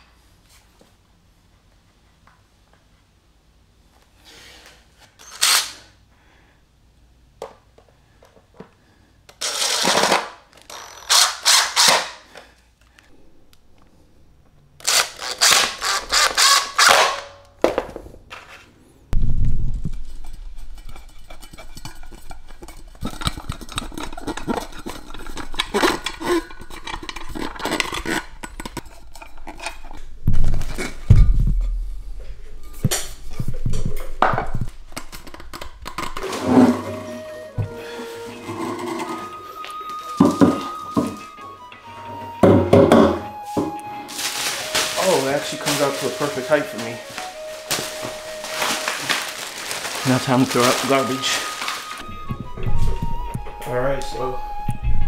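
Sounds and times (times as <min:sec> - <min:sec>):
packaging being handled: 0:14.8 - 0:17.0, 0:43.4 - 0:52.2
low hum: 0:19.1 - 0:20.9.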